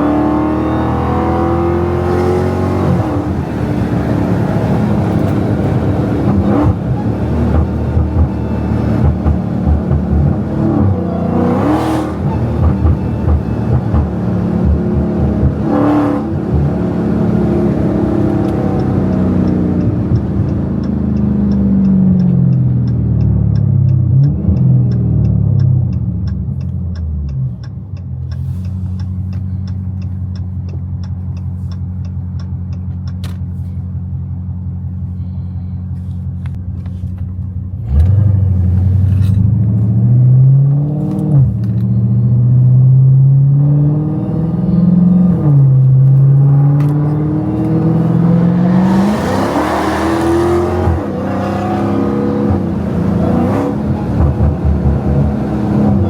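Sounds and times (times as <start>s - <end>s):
loud car engine exhaust: 0.0s - 56.0s
light regular ticking: 16.3s - 35.0s.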